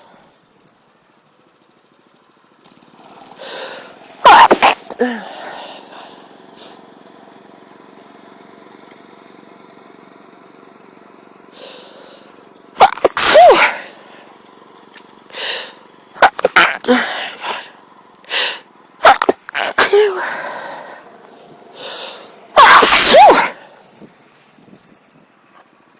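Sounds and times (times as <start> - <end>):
person sneezing: 3.4 - 6.8, 11.6 - 14.3, 15.3 - 21.1, 21.8 - 23.9.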